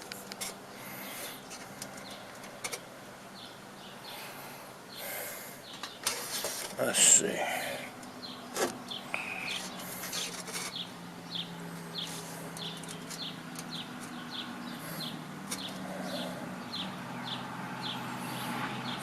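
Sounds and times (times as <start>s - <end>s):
light clicks and scrapes: 0.0s - 0.6s, 5.7s - 6.8s, 9.5s - 10.9s, 12.0s - 14.2s, 14.9s - 16.2s
steady low hum: 0.0s - 19.0s
small bird chirping: 8.0s - 19.0s.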